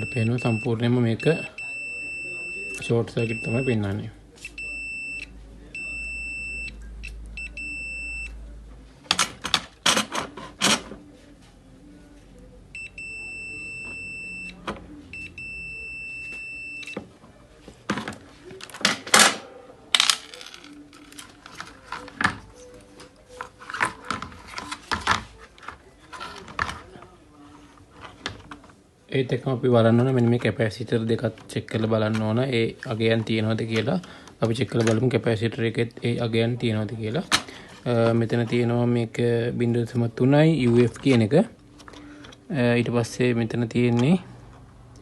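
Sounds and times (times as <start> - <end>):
multimeter high beep: 0.0 - 3.8, 4.5 - 8.4, 12.8 - 17.0.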